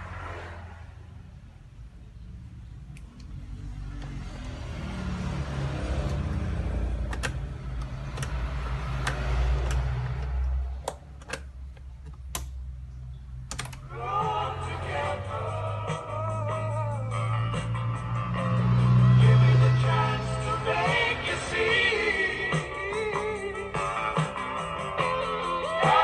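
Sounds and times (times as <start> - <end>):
music playing from tape: 13.8 - 26.0.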